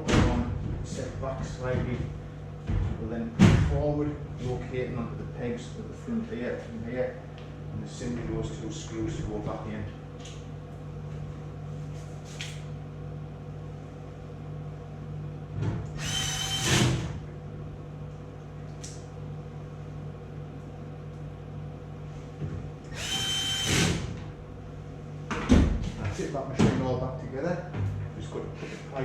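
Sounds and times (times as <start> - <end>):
cordless drill whirring: 16.0 - 17.0, 22.9 - 24.1.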